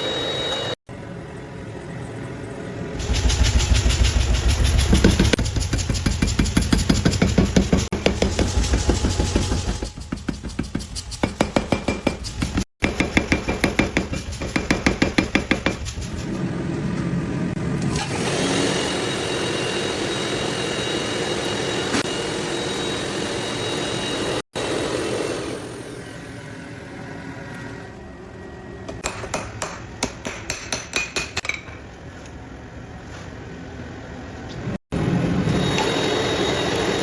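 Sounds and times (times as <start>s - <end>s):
machine whir with high whine: 0.0s - 5.4s, 16.4s - 29.0s, 33.8s - 37.0s
power hammer striking steel: 3.0s - 15.8s, 29.0s - 31.8s.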